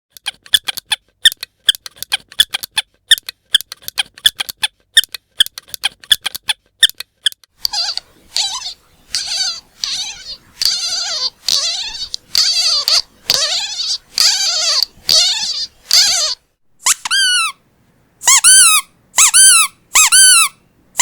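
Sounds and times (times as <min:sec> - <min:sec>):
squeaky toy squeaking: 0:07.2 - 0:17.6, 0:18.2 - 0:21.0.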